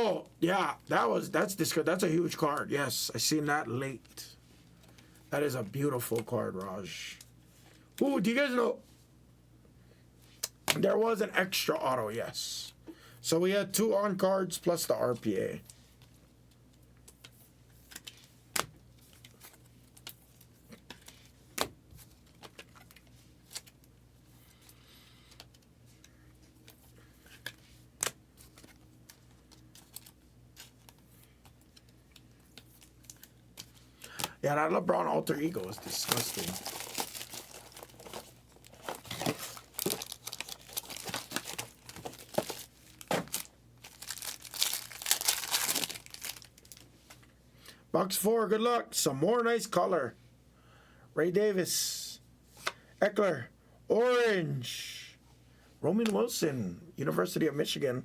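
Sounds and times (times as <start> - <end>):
wrapper crinkling and tearing: 35.3 - 46.9.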